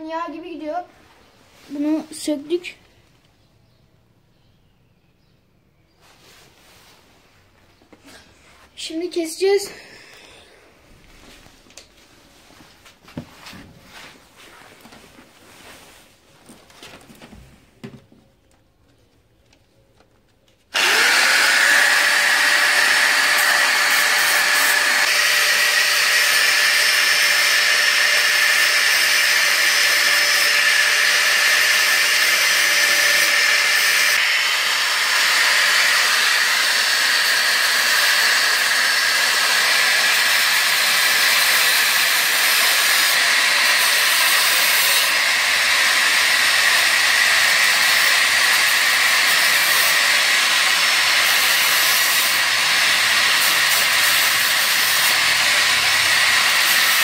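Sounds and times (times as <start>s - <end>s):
power tool cutting metal chain: 20.7s - 57.0s.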